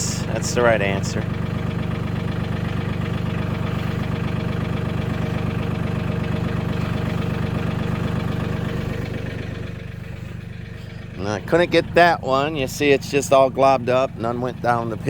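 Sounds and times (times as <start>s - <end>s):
tractor diesel engine running: 0.0s - 15.0s.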